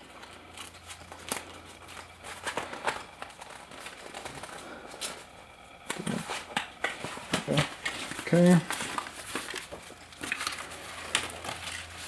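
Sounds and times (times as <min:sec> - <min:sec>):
packaging rustling and crinkling: 0:00.0 - 0:12.0.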